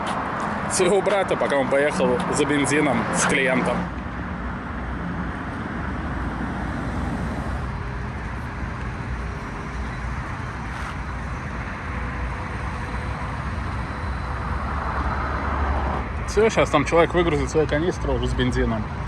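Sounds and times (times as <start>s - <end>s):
street traffic rumble: 0.0s - 19.0s.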